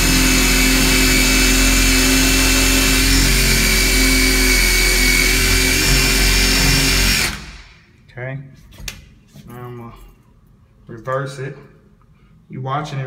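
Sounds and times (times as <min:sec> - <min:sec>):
cordless drill motor whining: 0:00.0 - 0:07.5.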